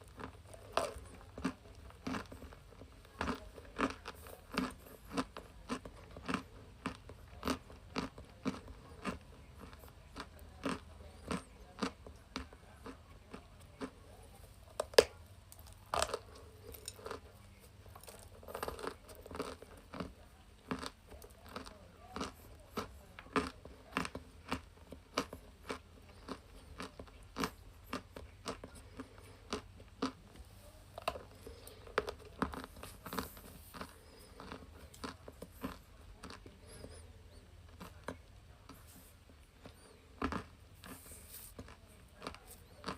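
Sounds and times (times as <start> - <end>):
chalk crunching: 38.7 - 42.9.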